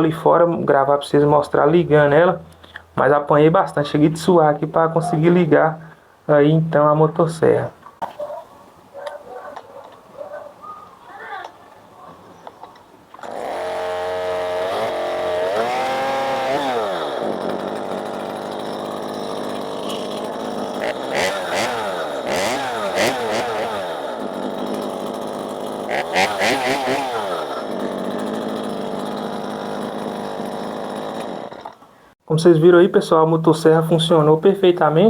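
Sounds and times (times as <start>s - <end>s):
chainsaw engine idling and revving: 13.2s - 31.9s.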